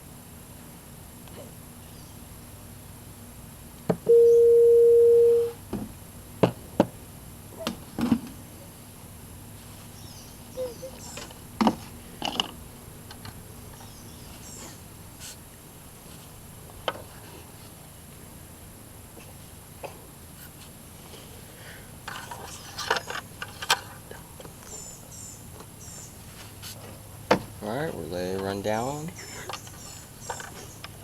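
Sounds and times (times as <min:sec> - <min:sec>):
steady beep: 0:04.1 - 0:05.6.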